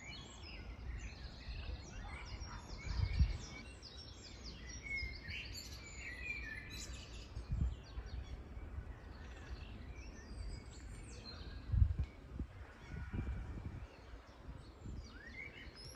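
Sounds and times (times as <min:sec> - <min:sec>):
birds chirping: 0:00.0 - 0:15.9.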